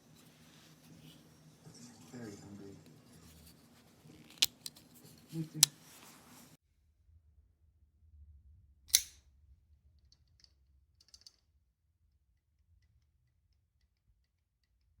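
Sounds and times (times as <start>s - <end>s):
sharp click: 8.9s - 9.2s.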